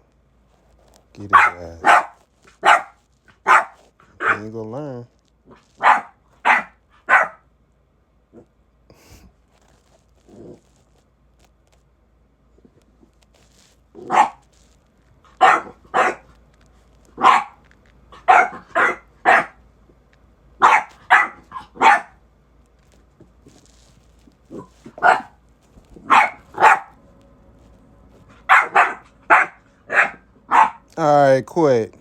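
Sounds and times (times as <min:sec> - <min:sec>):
puppy barking: 0:01.2 - 0:04.5, 0:05.5 - 0:07.4, 0:14.0 - 0:14.4, 0:15.3 - 0:16.3, 0:17.2 - 0:19.6, 0:20.6 - 0:22.2, 0:24.5 - 0:25.4, 0:26.0 - 0:27.0, 0:28.2 - 0:30.9.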